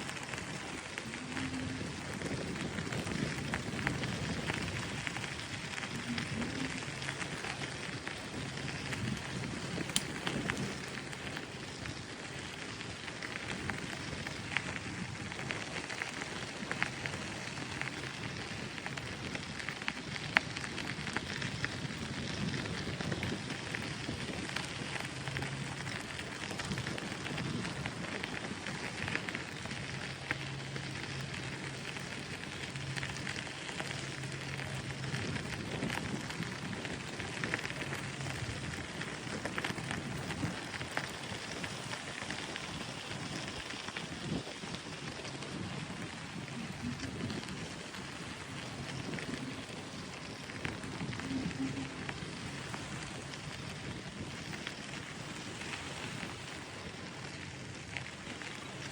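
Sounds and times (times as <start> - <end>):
bicycle tyres rolling on path: 0.0 - 58.9.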